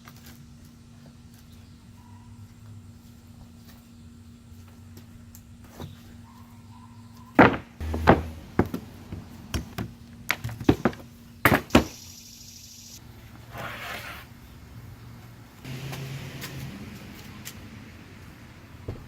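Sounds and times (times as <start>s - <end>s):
knocks of boards and tools: 7.4s - 12.0s
short scraping rasp: 13.5s - 14.3s.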